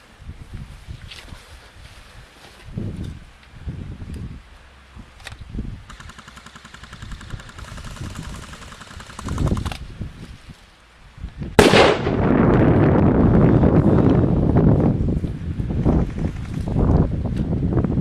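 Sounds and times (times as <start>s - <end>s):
airsoft guns firing bursts: 5.9s - 9.8s, 11.6s - 12.2s.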